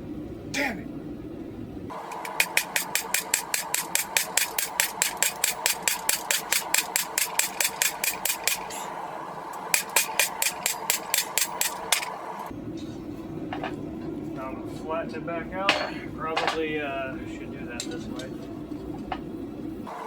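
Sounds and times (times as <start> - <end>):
hammer striking metal on anvil: 2.2 - 8.9, 9.7 - 12.1, 15.6 - 16.7.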